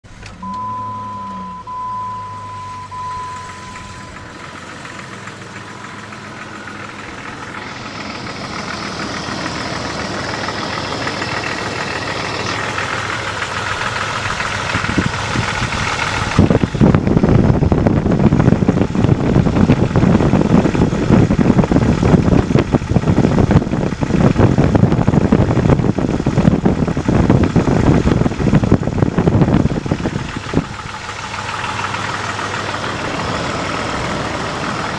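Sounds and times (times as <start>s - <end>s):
warning chime: 0.4s - 4.6s
engine knocking clatter: 3.2s - 34.9s.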